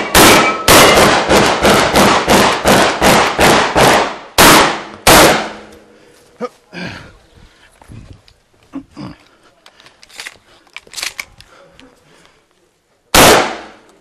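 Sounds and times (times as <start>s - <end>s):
shotgun shots: 0.0s - 5.7s, 13.1s - 13.8s.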